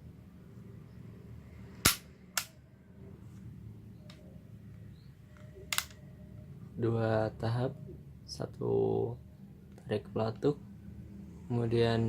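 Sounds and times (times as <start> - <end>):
pistol mechanism clicks: 1.8 - 2.6, 5.7 - 6.0.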